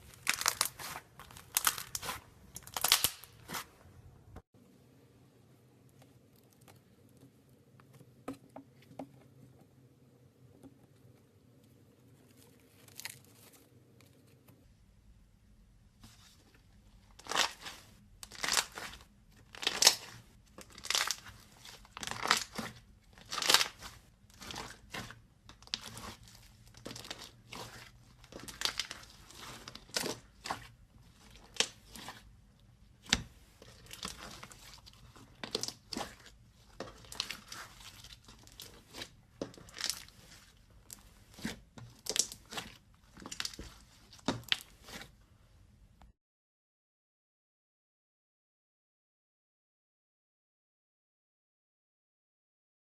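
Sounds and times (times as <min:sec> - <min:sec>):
slime squishing: 0:00.0 - 0:04.0, 0:17.1 - 0:45.2.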